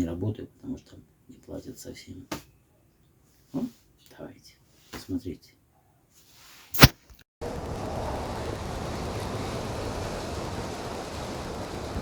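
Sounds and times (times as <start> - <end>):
sharp click: 6.8 - 7.2
blizzard wind buffeting microphone: 7.4 - 12.0.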